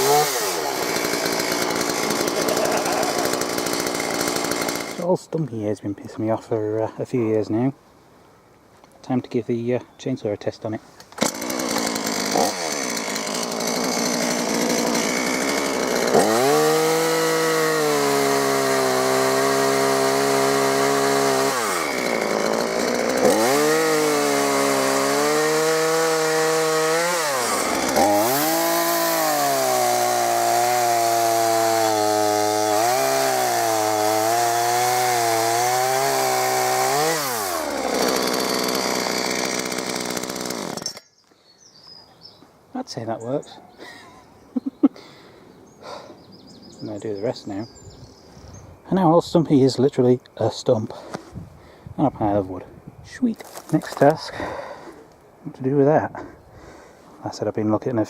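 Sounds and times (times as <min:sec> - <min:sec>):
chainsaw cutting wood: 0:00.0 - 0:05.1, 0:11.0 - 0:41.2.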